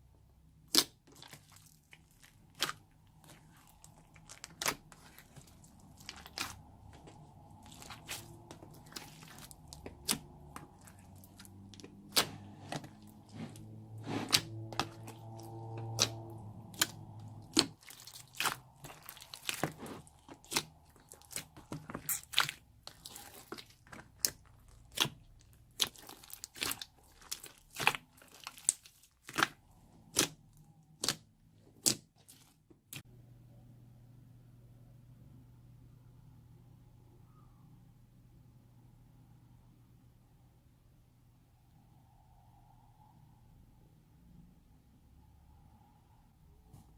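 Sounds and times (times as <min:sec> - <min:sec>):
slime popping and crackling: 0:14.3 - 0:30.4.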